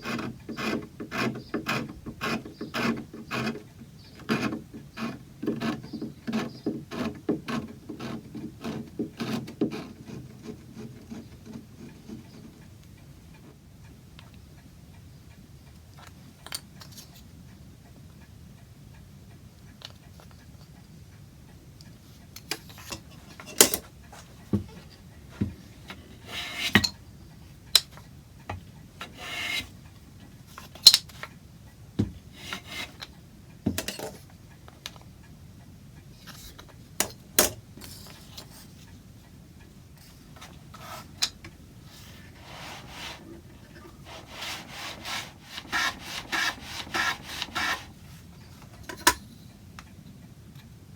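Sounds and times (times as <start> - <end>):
wood scraping: 0.0 - 12.7, 22.7 - 27.0, 29.0 - 29.8, 32.3 - 33.1, 40.0 - 49.1
tools handled on workbench: 22.5 - 27.0, 33.7 - 34.3, 36.2 - 38.7, 48.6 - 49.3.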